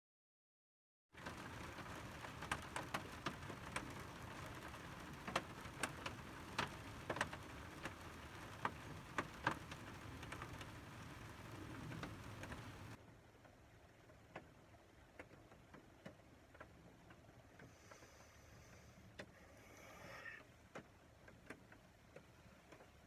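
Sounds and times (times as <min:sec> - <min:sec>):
raindrops tapping hard surface: 0:01.2 - 0:13.0, 0:14.0 - 0:18.0, 0:20.7 - 0:23.0
steady rain hiss: 0:01.2 - 0:23.0.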